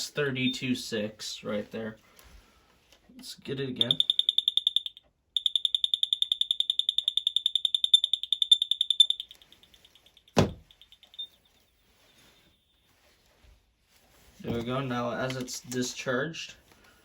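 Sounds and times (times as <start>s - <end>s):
smoke alarm fast beeping: 3.8s - 12.8s
thump: 10.4s - 10.7s.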